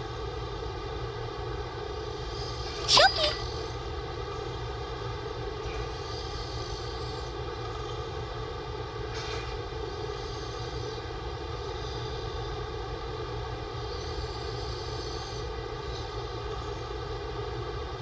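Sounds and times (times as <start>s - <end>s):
breathy rasp: 2.9s - 3.4s.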